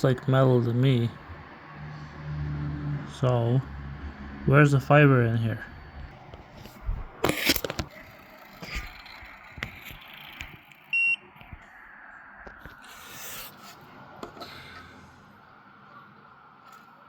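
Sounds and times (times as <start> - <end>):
small tools rustling: 6.4 - 10.6.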